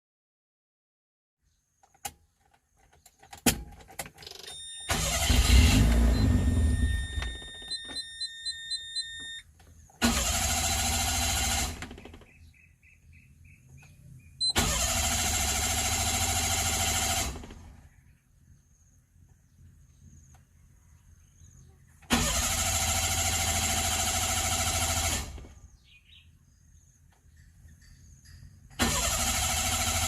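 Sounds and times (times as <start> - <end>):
starter motor cranking engine: 4.1 - 8.0, 10.0 - 12.5, 14.4 - 17.8, 22.1 - 25.6, 28.8 - 30.0
dashboard beeps: 4.5 - 5.0, 5.7 - 9.4.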